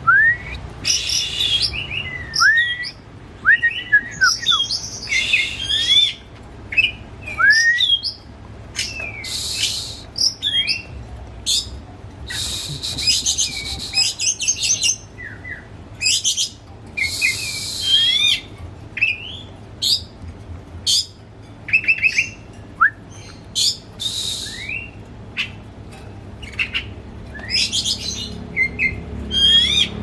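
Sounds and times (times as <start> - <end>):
harsh buzzy bird notes: 0.4 - 3.0, 3.6 - 20.2, 20.8 - 25.7
bird singing: 0.4 - 20.2, 20.9 - 25.6, 26.4 - 30.0.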